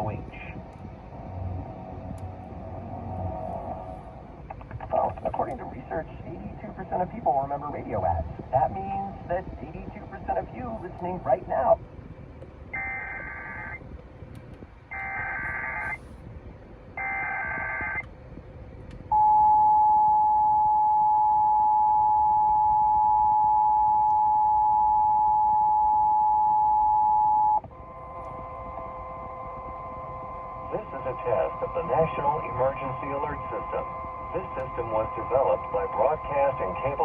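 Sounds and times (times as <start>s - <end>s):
radio static: 0.0s - 11.8s, 12.8s - 13.8s, 14.9s - 16.1s, 17.0s - 18.1s, 27.4s - 37.0s
faint steady tone: 0.0s - 37.0s.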